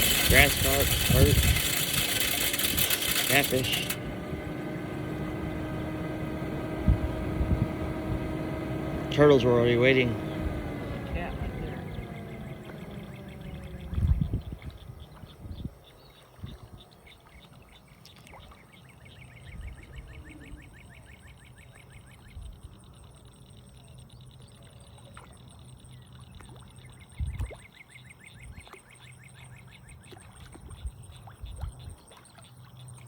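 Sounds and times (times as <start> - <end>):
steady low hum: 0.0 - 15.6.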